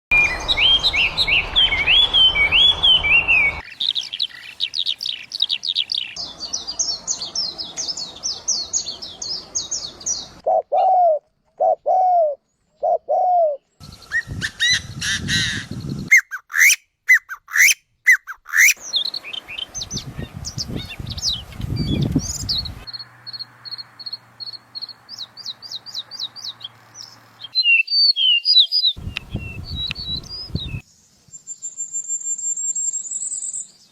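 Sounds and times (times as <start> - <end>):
sharp bird calls: 0.1 - 30.8
songbirds chirping and trilling: 0.1 - 32.1
low slurred bird whistles: 14.1 - 18.8, 27.6 - 30.8.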